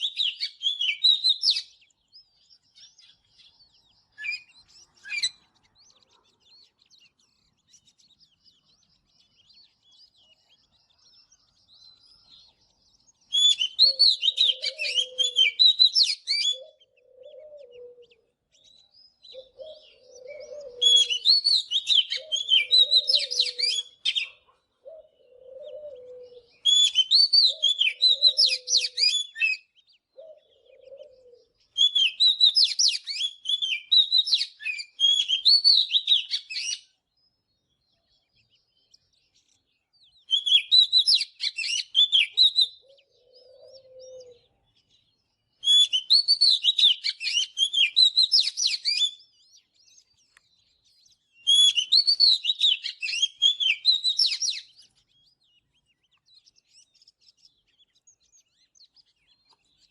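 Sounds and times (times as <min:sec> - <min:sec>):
bird singing whistled phrases: 0:00.0 - 0:05.5, 0:11.0 - 0:17.9, 0:18.6 - 0:24.4, 0:25.5 - 0:30.4, 0:31.7 - 0:36.9, 0:40.0 - 0:44.4, 0:45.6 - 0:50.2, 0:50.8 - 0:55.6.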